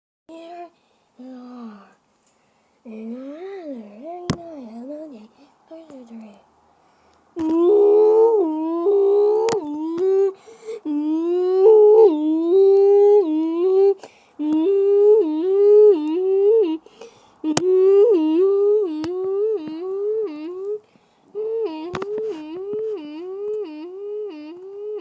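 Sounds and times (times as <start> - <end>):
person humming two-note alarm: 10.9 - 20.8, 21.4 - 25.0.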